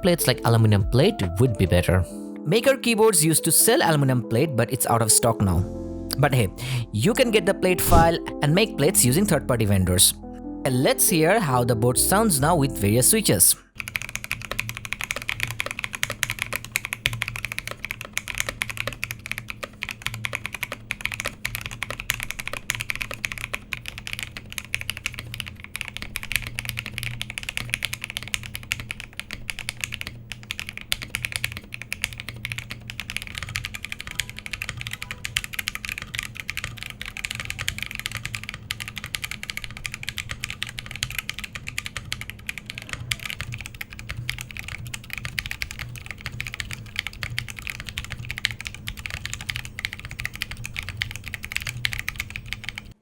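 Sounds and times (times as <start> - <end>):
fast mechanical keyboard typing: 12.0 - 53.0.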